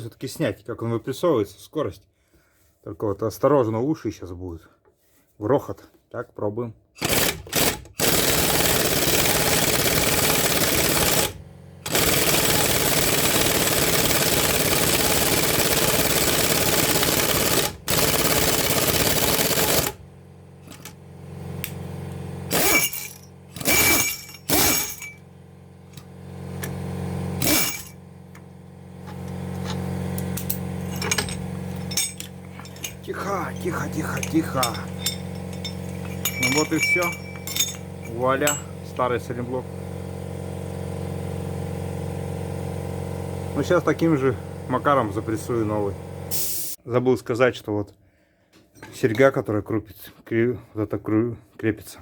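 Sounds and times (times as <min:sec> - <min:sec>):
impact wrench hammering: 0:07.0 - 0:20.0, 0:20.6 - 0:21.0, 0:22.5 - 0:25.3, 0:27.4 - 0:39.1.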